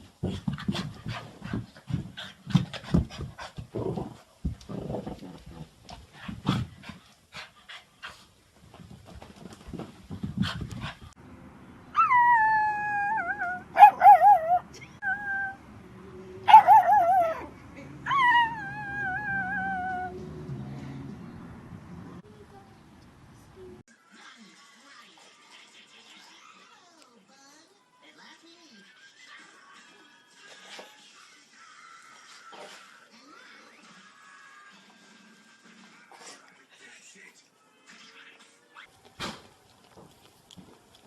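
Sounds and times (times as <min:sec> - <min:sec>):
dog howling: 0:12.0 - 0:15.6, 0:16.5 - 0:17.5, 0:18.1 - 0:20.2.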